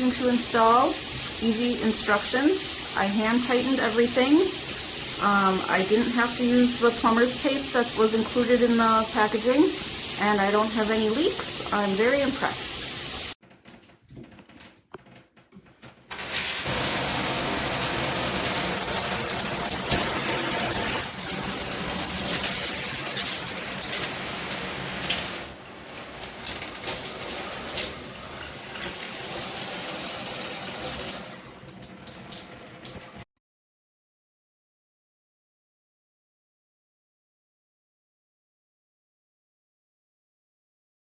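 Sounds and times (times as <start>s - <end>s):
shower head spraying water: 0.2s - 13.4s, 16.1s - 31.4s.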